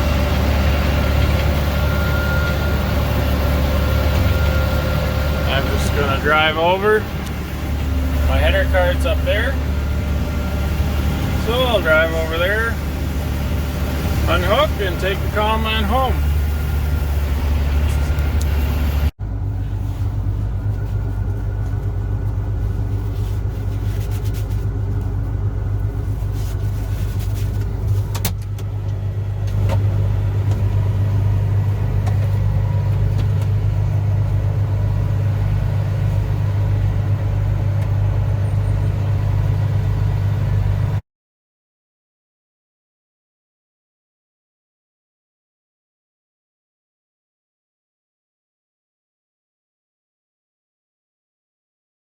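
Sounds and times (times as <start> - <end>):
combine harvester engine running: 0.0 - 41.0.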